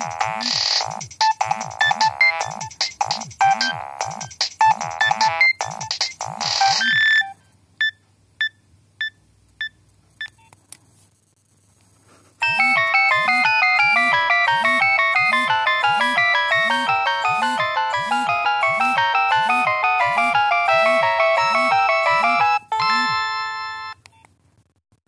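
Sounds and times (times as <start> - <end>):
electronic ringtone melody: 0.0 - 7.4, 12.4 - 24.0
busy ringtone with repeating bass: 0.0 - 8.0, 12.4 - 24.0.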